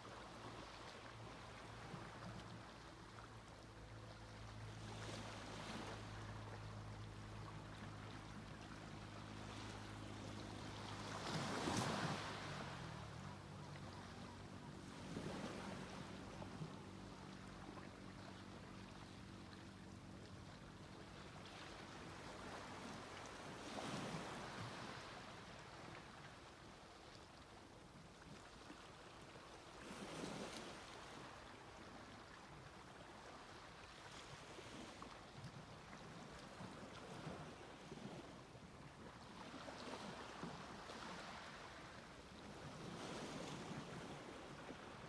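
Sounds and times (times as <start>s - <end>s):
sea waves washing onto beach: 9.5s - 13.6s.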